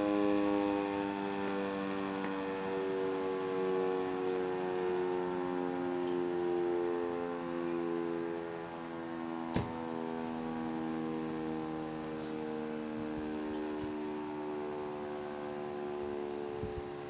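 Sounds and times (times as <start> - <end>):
warning siren wailing: 0.0 - 17.0.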